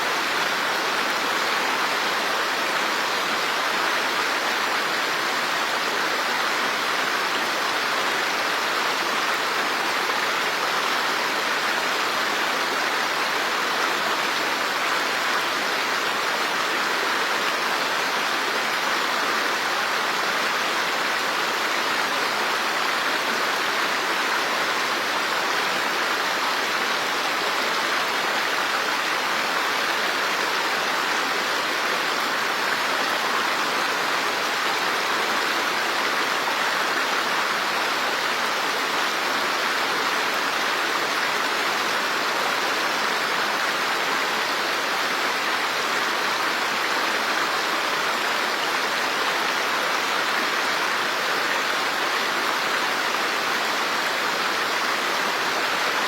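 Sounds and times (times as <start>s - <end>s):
running water rushing: 0.0s - 56.0s.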